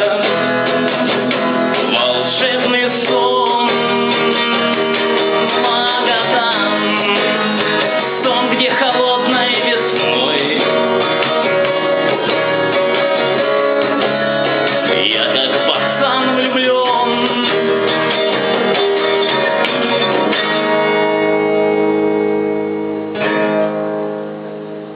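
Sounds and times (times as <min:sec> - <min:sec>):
strummed acoustic guitar music: 0:00.0 - 0:24.9.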